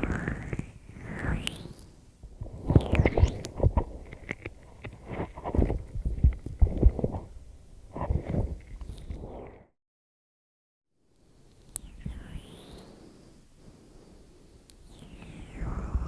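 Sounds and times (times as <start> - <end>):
hands rubbing microphones: 2.4 - 9.4.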